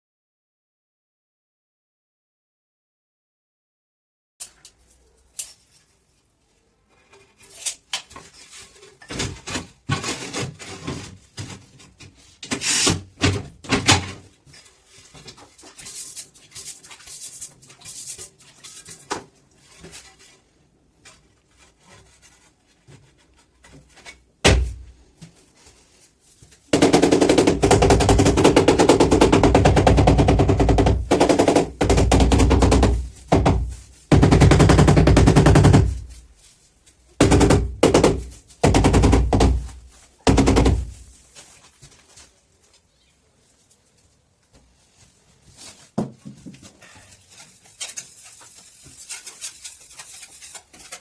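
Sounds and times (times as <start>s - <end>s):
building work knocks and scrapes: 4.4s - 42.9s, 43.6s - 51.0s
hammer drill hammering: 26.8s - 36.0s.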